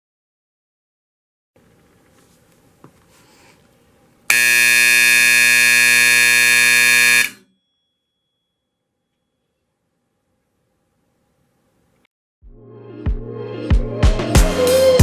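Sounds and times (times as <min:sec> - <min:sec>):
fire alarm horn blast: 0:04.3 - 0:07.5.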